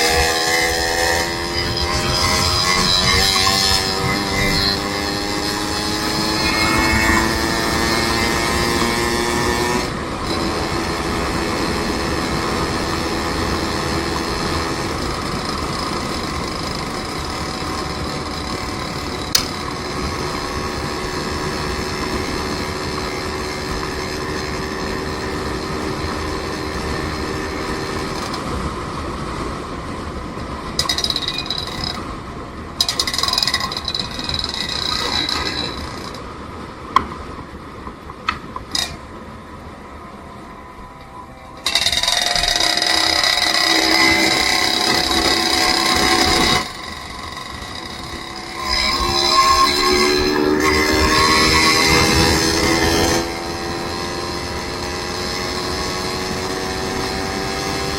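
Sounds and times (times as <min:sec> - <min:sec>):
sharp clicks and clatters: 0:00.0 - 0:09.2, 0:12.8 - 0:28.5, 0:30.8 - 0:32.2, 0:32.8 - 0:36.3, 0:37.8 - 0:39.1, 0:41.0 - 0:53.2
vehicle engine running: 0:00.0 - 0:29.3.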